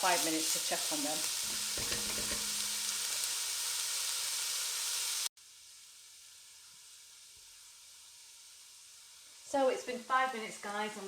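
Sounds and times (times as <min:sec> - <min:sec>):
vegetables sizzling in oil: 0:00.0 - 0:11.0.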